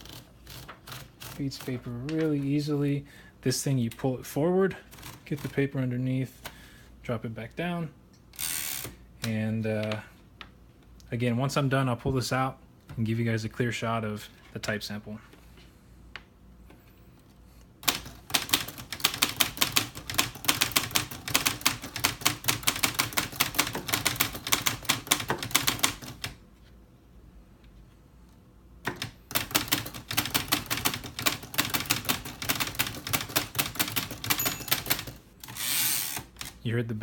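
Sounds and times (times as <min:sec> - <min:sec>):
typewriter keys striking: 0:17.8 - 0:26.4, 0:28.9 - 0:35.2
typewriter margin bell ringing: 0:33.7 - 0:35.2.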